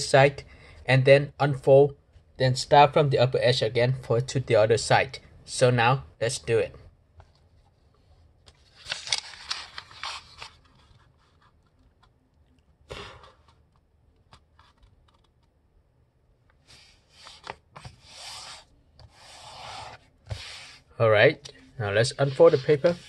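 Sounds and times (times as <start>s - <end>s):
paper rustling and scraping: 7.5s - 11.7s, 16.6s - 20.8s, 22.0s - 23.0s.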